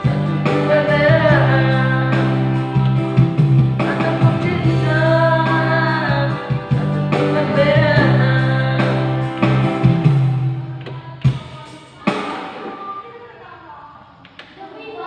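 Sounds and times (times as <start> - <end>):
man singing a ballad: 0.0 - 2.8, 3.8 - 9.9
instrumental backing: 0.0 - 13.2.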